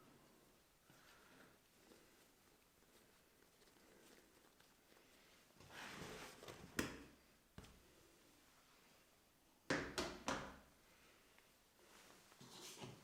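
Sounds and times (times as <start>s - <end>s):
soft rustling scrape: 1.0s - 6.6s, 11.8s - 13.0s.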